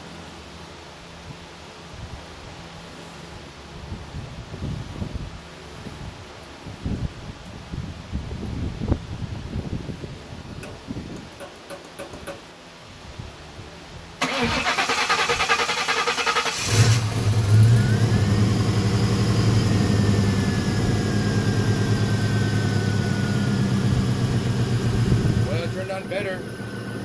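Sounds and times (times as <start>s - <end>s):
car engine starting and idling: 14.2s - 27.0s.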